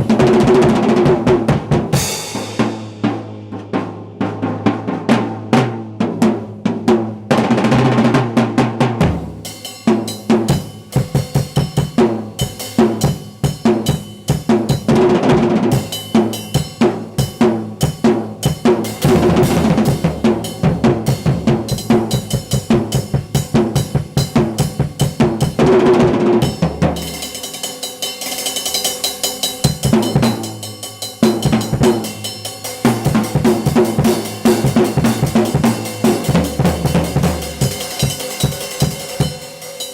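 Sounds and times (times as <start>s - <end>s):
drum rolls and fills: 0.0s - 39.9s
cymbal crashes: 2.0s - 3.2s, 15.8s - 25.2s, 26.4s - 39.9s
bass drum hits: 18.9s - 23.4s.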